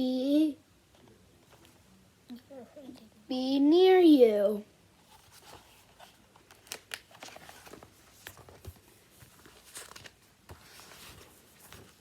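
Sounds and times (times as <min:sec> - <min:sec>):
book pages rustling and turning: 0:05.0 - 0:12.0.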